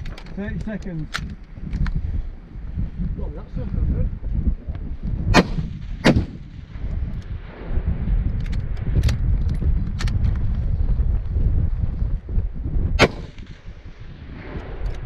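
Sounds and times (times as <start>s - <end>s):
wind rumbling on microphone: 0.0s - 15.0s
rifle shots: 5.3s - 6.7s, 13.0s - 14.8s.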